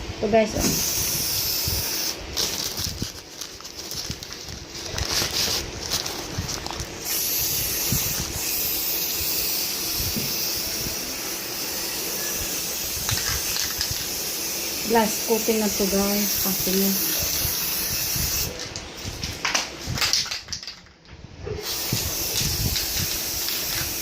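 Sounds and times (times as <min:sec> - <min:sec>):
aerosol spray hissing: 0:00.6 - 0:02.2, 0:07.0 - 0:18.6, 0:21.7 - 0:24.0.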